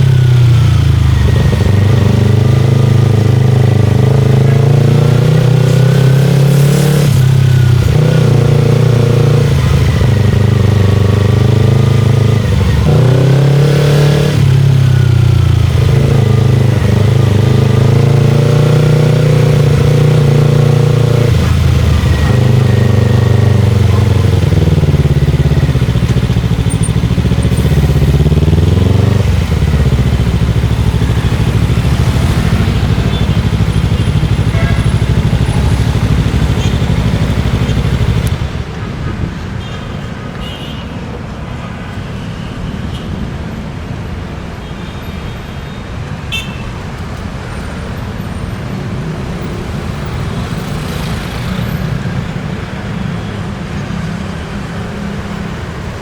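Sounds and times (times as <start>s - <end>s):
motorcycle engine running: 0.0s - 38.7s.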